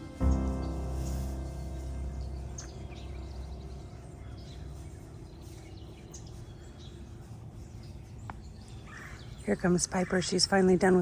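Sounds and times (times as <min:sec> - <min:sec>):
music chord: 0:00.0 - 0:05.4
bird chirps: 0:00.0 - 0:11.0
low background rumble: 0:00.0 - 0:11.0.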